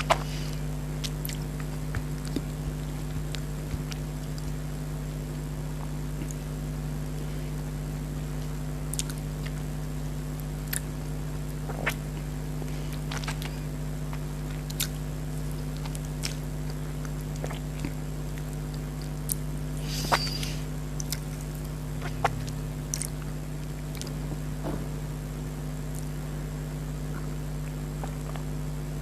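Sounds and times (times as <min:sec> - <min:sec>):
steady low hum: 0:00.0 - 0:29.0
wet mouth clicks and chewing: 0:01.0 - 0:04.6, 0:08.9 - 0:09.6, 0:10.6 - 0:10.9, 0:12.9 - 0:15.0, 0:15.7 - 0:24.2, 0:27.1 - 0:28.5.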